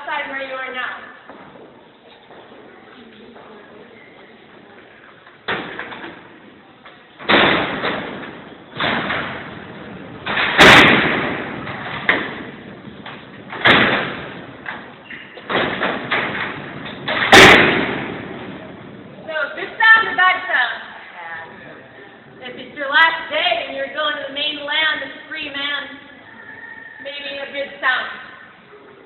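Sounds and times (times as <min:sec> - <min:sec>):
steel cell doors clanging shut: 0:07.2 - 0:18.7.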